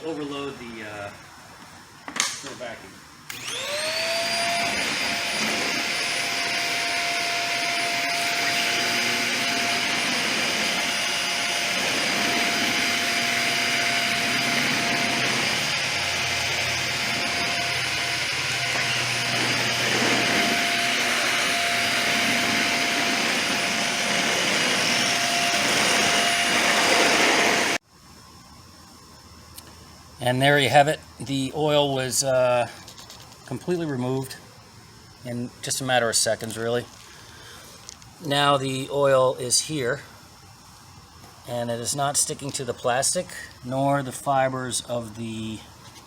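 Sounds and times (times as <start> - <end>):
vacuum cleaner motor whine: 3.3 - 27.8.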